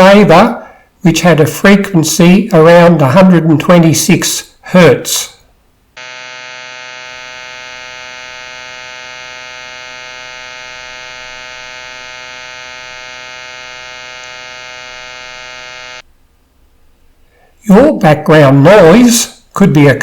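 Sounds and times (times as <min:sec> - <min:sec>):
electric shaver buzzing: 0:06.0 - 0:16.0.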